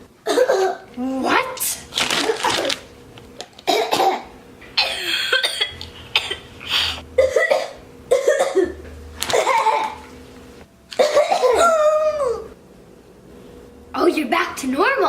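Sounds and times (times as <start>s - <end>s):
child coughing: 0.2s - 0.9s, 3.7s - 6.5s, 7.2s - 10.0s, 10.9s - 12.4s.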